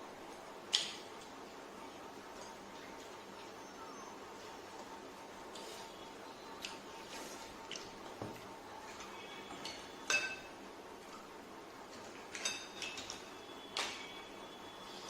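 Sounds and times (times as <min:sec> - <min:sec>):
dishes and utensils clinking: 0:08.9 - 0:10.5, 0:12.3 - 0:14.1.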